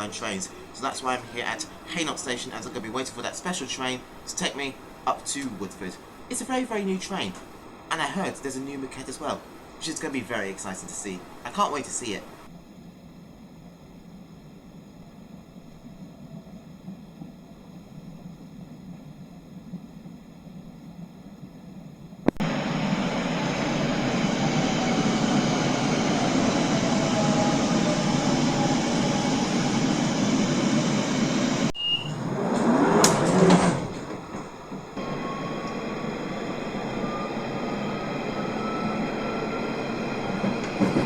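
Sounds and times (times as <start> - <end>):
rushing burst of train noise: 0.0 - 12.5, 22.4 - 41.0
tube train running: 0.0 - 12.5, 22.4 - 41.0
motor whine rising in pitch: 22.4 - 33.3, 35.0 - 40.8.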